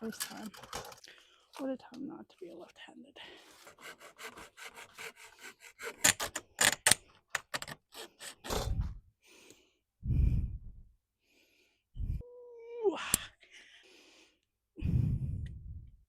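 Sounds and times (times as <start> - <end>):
hand saw cutting: 3.5 - 8.6.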